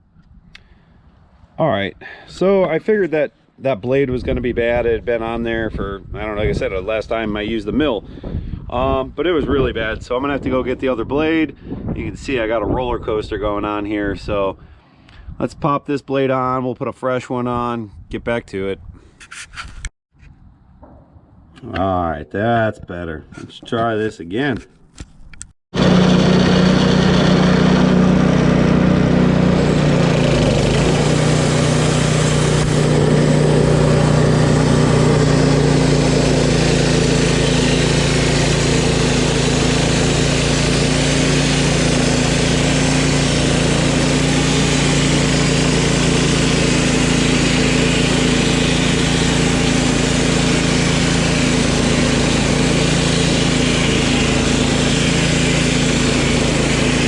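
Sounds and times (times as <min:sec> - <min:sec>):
band blade sawing log: 0:25.8 - 0:57.0
sawmill gas engine running: 0:25.8 - 0:57.0.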